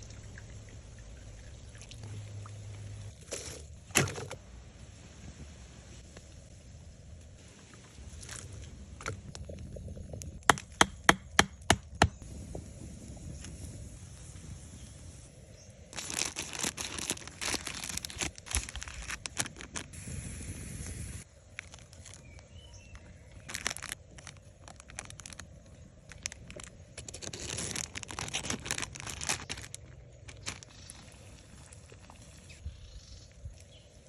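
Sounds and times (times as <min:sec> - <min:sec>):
rustling and crackling handling noise: 0:15.9 - 0:20.0, 0:21.4 - 0:32.2.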